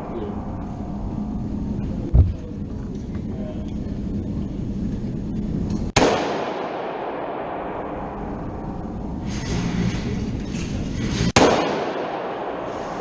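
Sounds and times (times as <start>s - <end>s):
dull low thump: 2.1s - 2.5s
gunshot with echo: 6.0s - 8.6s, 11.3s - 13.0s.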